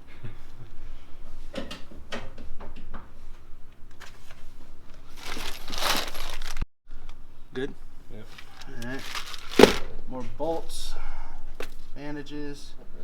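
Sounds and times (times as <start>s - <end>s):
paper or plastic rustling: 5.0s - 6.6s, 8.3s - 9.9s.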